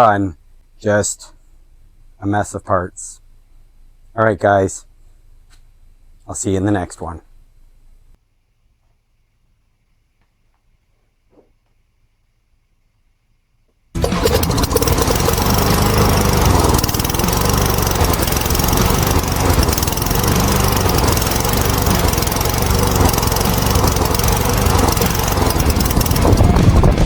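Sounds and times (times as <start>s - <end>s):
lawnmower engine running: 14.0s - 27.0s.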